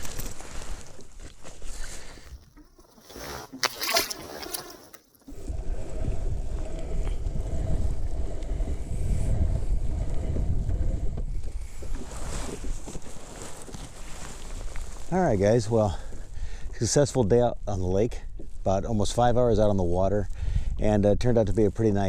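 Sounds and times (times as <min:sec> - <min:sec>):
wind buffeting microphone: 0:05.4 - 0:13.4.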